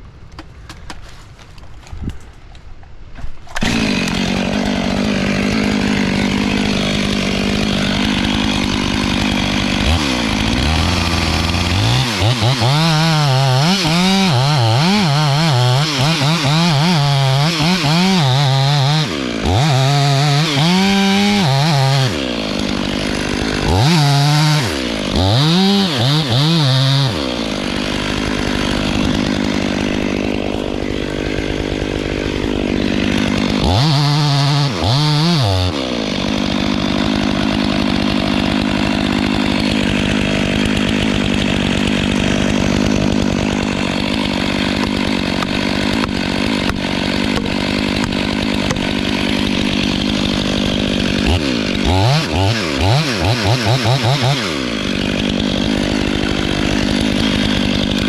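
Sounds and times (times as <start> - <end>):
chainsaw cutting wood: 3.2 - 58.0.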